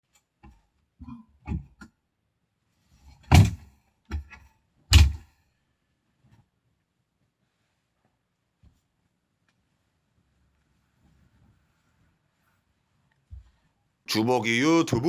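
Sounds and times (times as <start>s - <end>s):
knocks and thumps: 3.3s - 3.6s.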